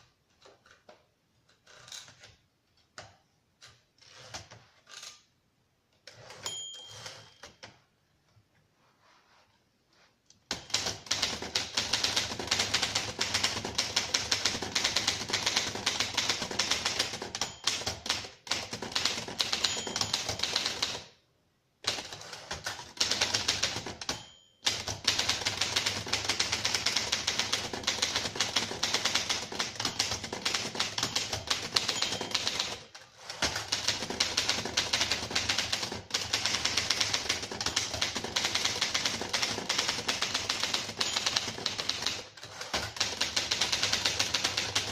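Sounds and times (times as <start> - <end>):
typewriter keystrokes clacking: 10.5 - 21.1, 21.8 - 44.9.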